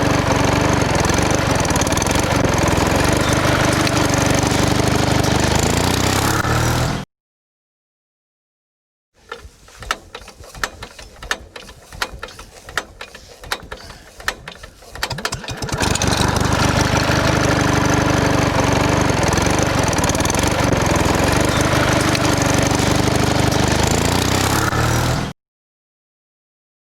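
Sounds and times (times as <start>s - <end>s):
small engine running: 0.0s - 7.0s, 9.2s - 25.3s
sharp clicks and knocks: 9.2s - 16.1s.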